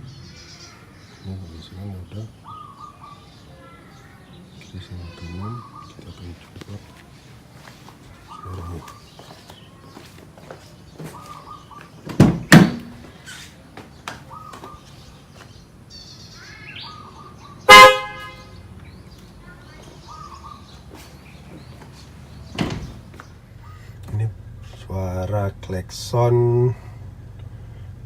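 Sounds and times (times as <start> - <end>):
loud sharp thumps: 12.0 - 13.2
car horn blast: 17.7 - 18.6.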